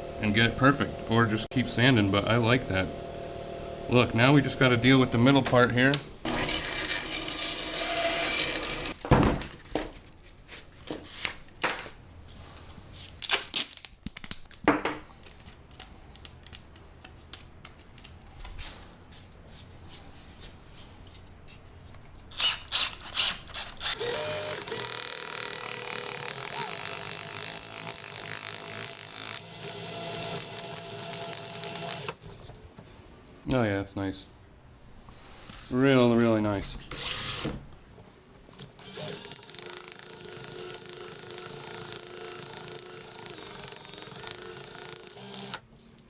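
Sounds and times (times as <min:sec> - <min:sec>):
small power tool sanding: 0:24.0 - 0:33.4, 0:38.0 - 0:46.0.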